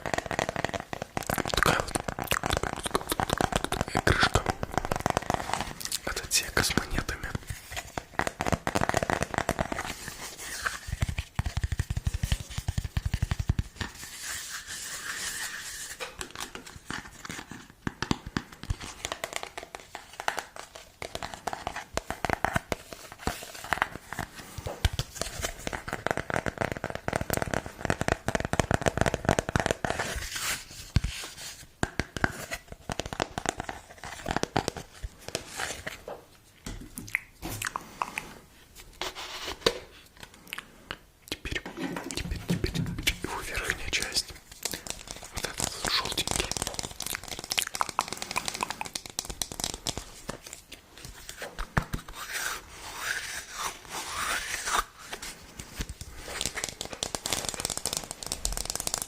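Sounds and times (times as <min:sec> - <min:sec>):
material crinkling and tearing: 0:00.0 - 0:14.6, 0:44.0 - 0:59.0.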